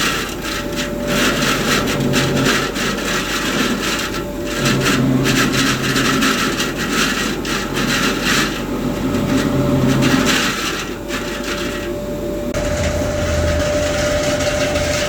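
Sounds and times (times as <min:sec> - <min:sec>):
machine running with rushing hum: 0:00.0 - 0:15.0
low drone: 0:12.5 - 0:15.0.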